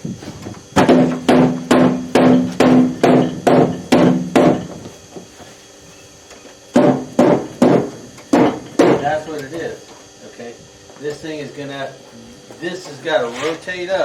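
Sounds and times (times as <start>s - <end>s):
ringing hammer blows: 0.8s - 4.8s.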